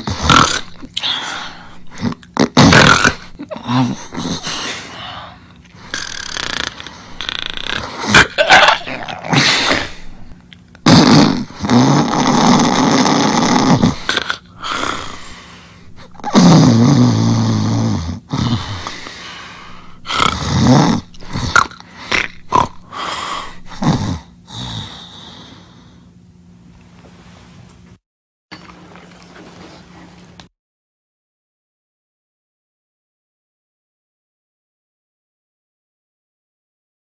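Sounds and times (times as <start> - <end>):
loud rough snoring: 0.0 - 0.8, 1.9 - 4.4, 5.9 - 15.3, 16.0 - 19.1, 19.8 - 22.8, 23.7 - 25.1.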